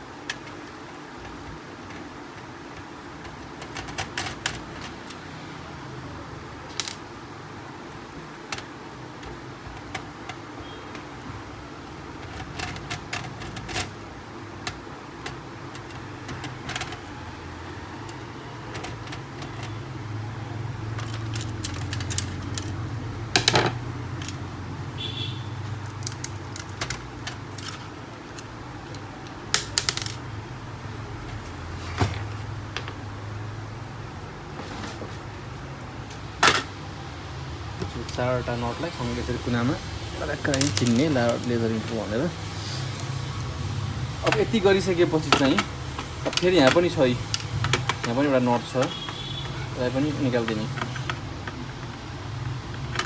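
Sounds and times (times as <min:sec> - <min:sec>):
metal screws and screwdriver clinking: 0:20.9 - 0:24.4.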